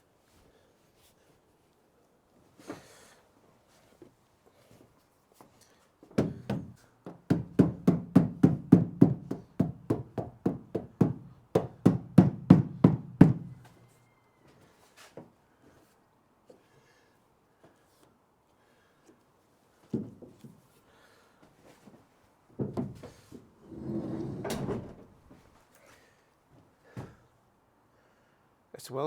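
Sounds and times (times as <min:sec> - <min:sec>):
knocking on metal door flange: 0:06.2 - 0:13.7.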